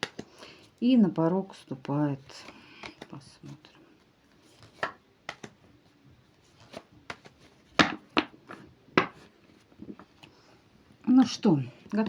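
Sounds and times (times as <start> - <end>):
cards tapping and slapping down: 0.0 - 0.3, 4.6 - 5.6, 6.6 - 10.1.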